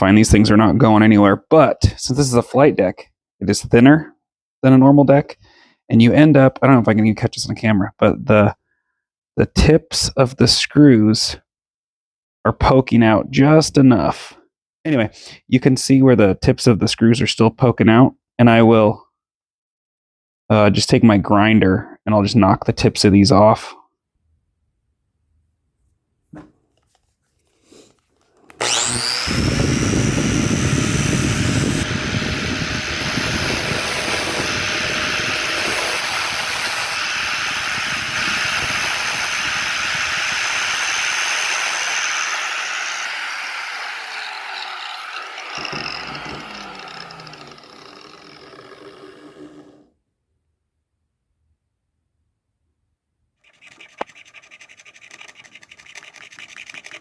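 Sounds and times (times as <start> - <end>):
grinder whining and grinding: 27.6 - 49.9.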